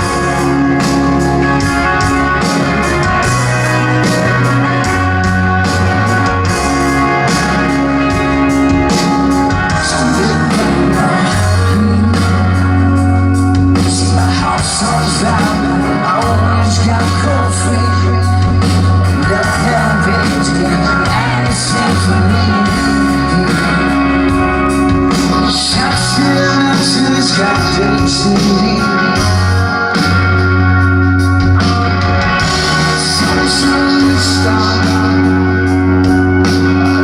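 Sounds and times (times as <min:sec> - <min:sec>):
person singing: 0:00.0 - 0:30.1, 0:31.6 - 0:37.0
bass guitar long notes: 0:00.0 - 0:37.0
drum beats: 0:00.0 - 0:37.0
electric guitars: 0:00.0 - 0:37.0.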